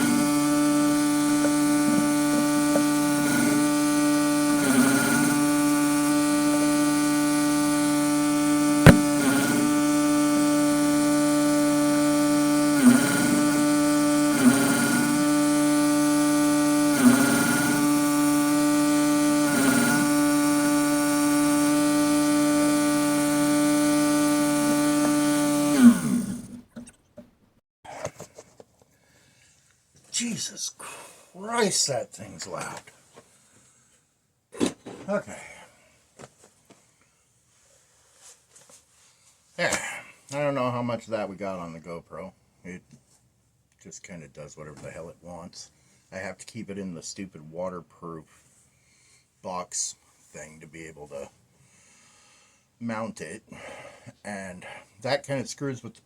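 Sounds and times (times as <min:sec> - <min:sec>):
generator humming: 0:00.0 - 0:27.0
sharp click: 0:08.9 - 0:09.2.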